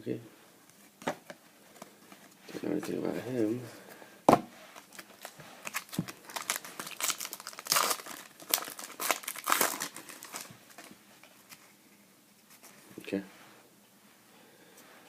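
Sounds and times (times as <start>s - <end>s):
wrapper crinkling: 4.7s - 11.6s.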